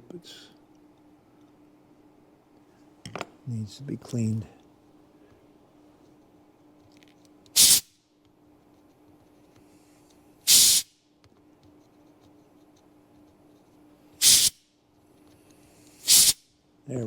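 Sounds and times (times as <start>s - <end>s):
faint steady hum: 0.0s - 17.0s
short blasts of air: 7.6s - 7.9s, 10.5s - 10.9s, 14.2s - 14.6s, 15.8s - 16.4s.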